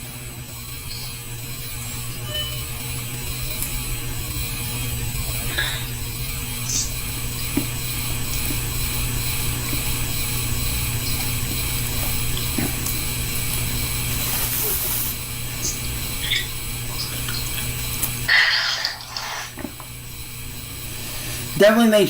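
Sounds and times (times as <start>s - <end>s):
electric fan humming: 0.0s - 22.0s
slurping noodles: 18.3s - 19.7s.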